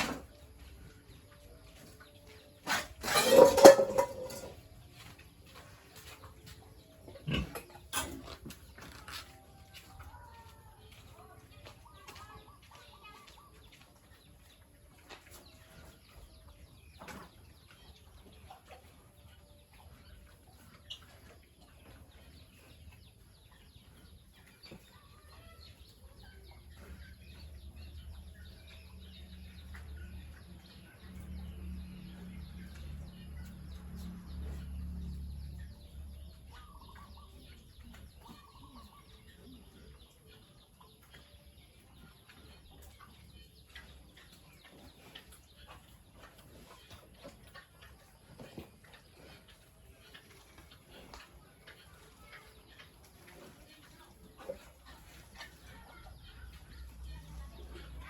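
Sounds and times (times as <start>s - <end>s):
faint farm animal calls: 0.0s - 58.0s.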